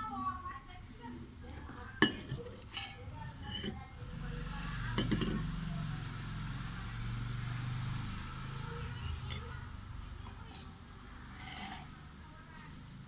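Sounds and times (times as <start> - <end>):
utensil clinking against bowl: 2.0 - 3.9, 5.0 - 5.5, 9.3 - 9.6, 11.3 - 12.0.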